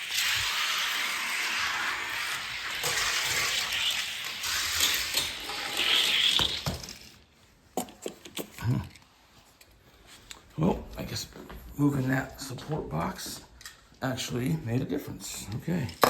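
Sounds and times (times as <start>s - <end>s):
toy cars rolling on track: 0.0s - 7.3s.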